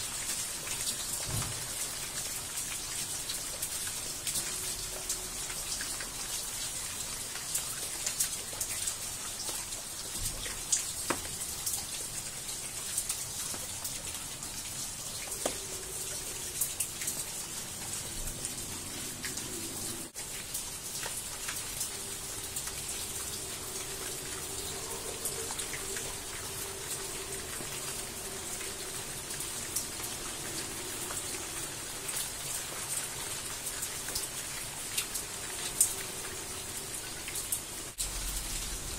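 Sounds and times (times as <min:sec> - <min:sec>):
heavy rain pouring: 0:00.0 - 0:38.9.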